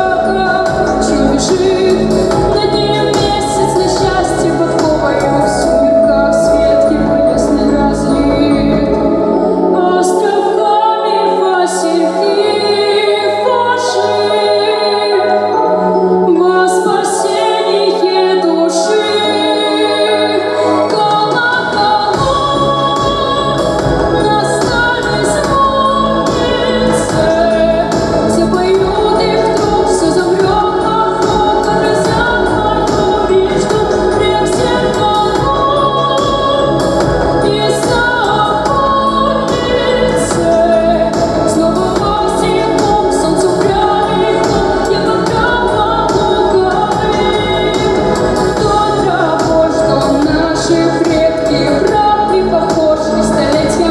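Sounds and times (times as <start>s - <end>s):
deep bass: 0.0s - 9.6s, 21.6s - 53.9s
choir-like backing voices: 0.0s - 53.9s
musical accompaniment: 0.0s - 53.9s
woman singing: 0.0s - 53.9s.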